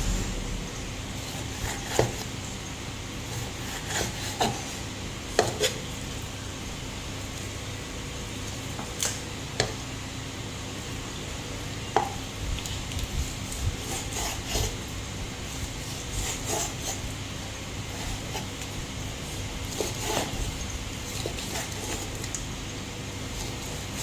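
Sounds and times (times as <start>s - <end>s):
faint steady hum: 0.0s - 1.8s.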